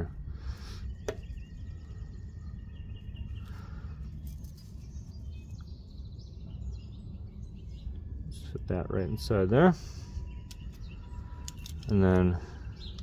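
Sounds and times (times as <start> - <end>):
birds chirping in trills: 0.0 - 13.0
low background rumble: 0.0 - 13.0.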